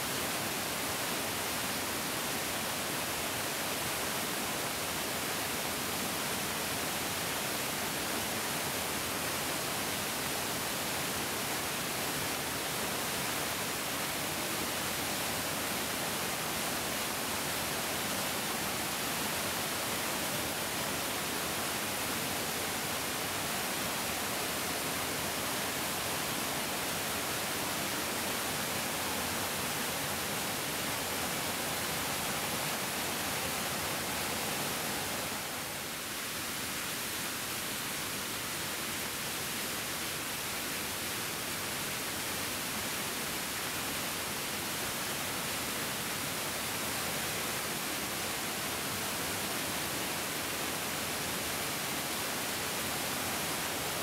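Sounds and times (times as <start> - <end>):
mountain stream rushing: 0.0 - 54.0.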